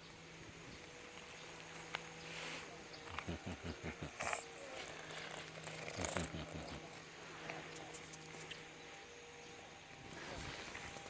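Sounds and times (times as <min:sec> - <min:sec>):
cat purring: 0:03.0 - 0:07.0.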